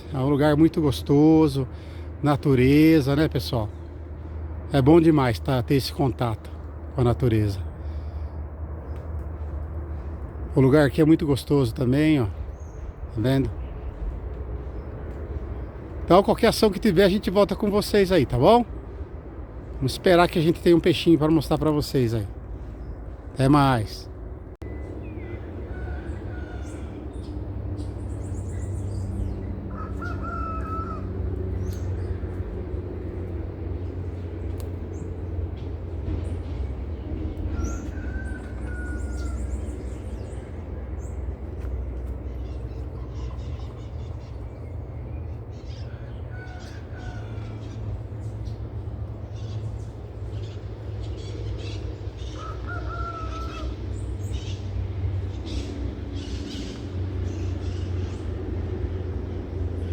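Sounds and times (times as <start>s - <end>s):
steady low rumble: 0.0s - 52.7s
bird calling: 20.8s - 32.6s, 33.8s - 58.7s.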